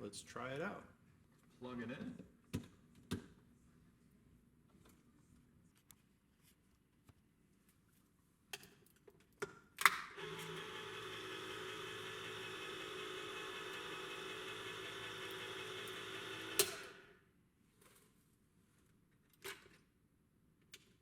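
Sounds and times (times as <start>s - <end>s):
can opener lever clicks and snap: 9.4s - 10.2s, 16.6s - 16.9s
can opener motor humming: 10.2s - 17.2s.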